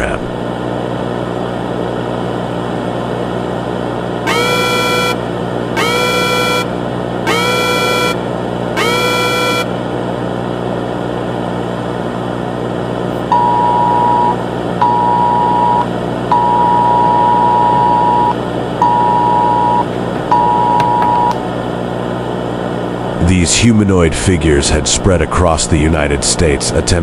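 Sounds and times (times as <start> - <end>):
low hum: 0.0 - 27.0.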